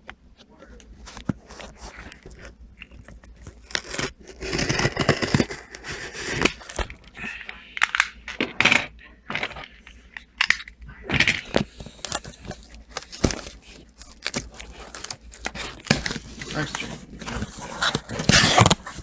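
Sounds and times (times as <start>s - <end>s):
packaging tearing and crinkling: 1.0s - 7.3s, 10.4s - 19.0s.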